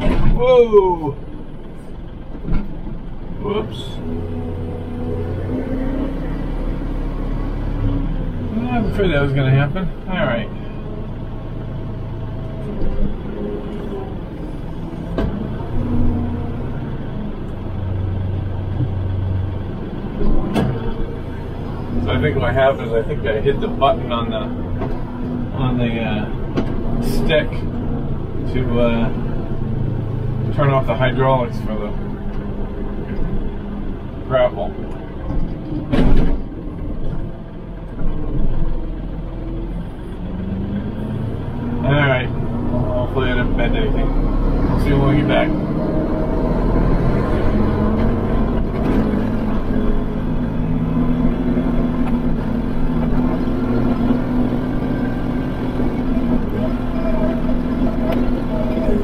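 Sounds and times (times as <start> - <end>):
tractor diesel engine running: 0.0 - 59.0.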